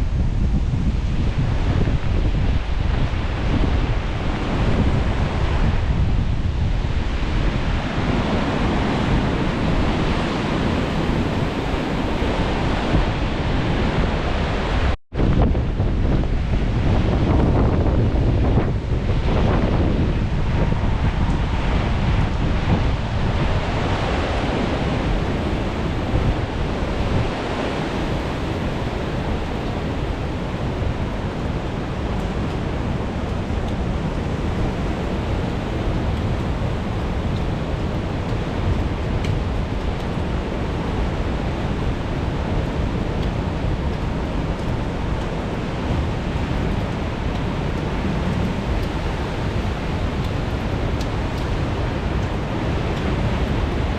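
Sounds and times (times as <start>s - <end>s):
sea surf washing: 0.0s - 53.9s
wind buffeting microphone: 0.0s - 53.9s.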